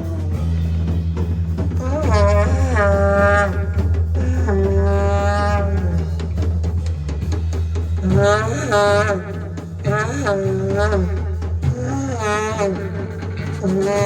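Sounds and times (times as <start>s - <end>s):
bass: 0.0s - 14.0s
drum kit: 0.0s - 14.0s
live rock band playing: 0.0s - 14.0s
sliding lead melody: 0.0s - 14.0s.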